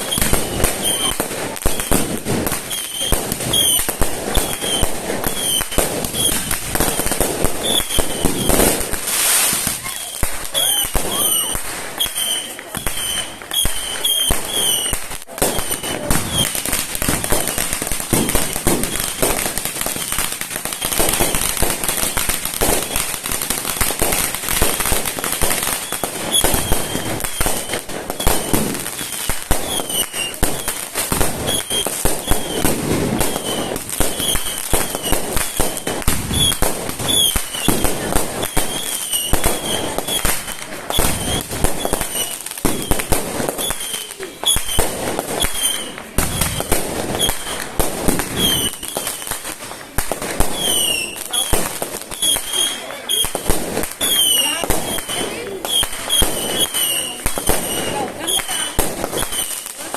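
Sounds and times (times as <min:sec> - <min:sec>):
fireworks bangs and crackles: 0:00.0 - 0:59.9.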